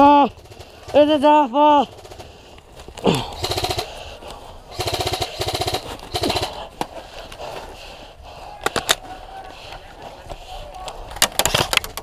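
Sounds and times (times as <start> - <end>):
airsoft rifle full-auto bursts: 0.0 - 2.5, 3.3 - 6.7.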